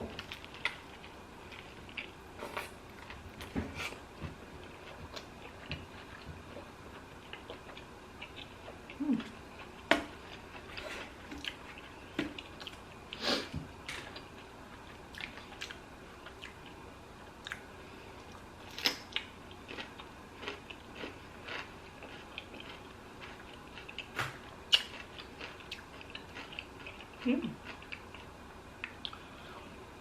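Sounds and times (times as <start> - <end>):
chewing and wet mouth smacks: 14.8 - 16.7, 24.7 - 29.2.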